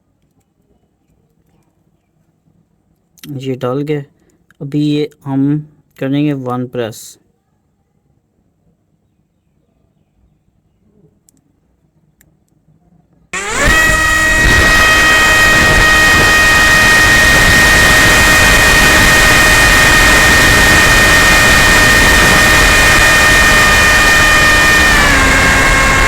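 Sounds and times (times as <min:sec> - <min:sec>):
model plane motor whining: 0:13.4 - 0:26.0.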